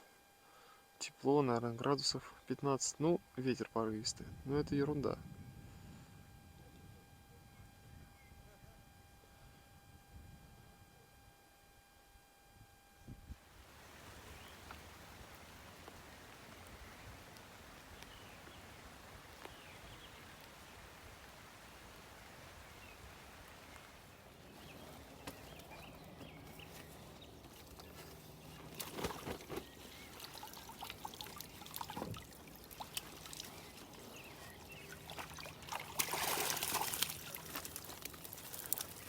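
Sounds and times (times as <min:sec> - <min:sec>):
faint steady low hum: 0:00.0 - 0:39.0
water pouring and splashing: 0:28.6 - 0:39.0.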